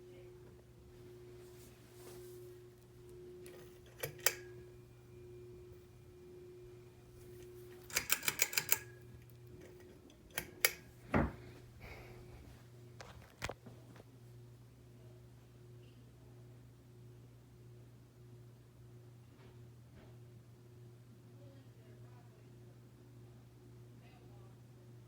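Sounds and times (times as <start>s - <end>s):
ceiling fan humming: 0.0s - 25.0s
sharp clicks: 3.5s - 4.6s, 7.8s - 9.0s, 9.6s - 10.8s
dull thump: 11.1s - 11.5s.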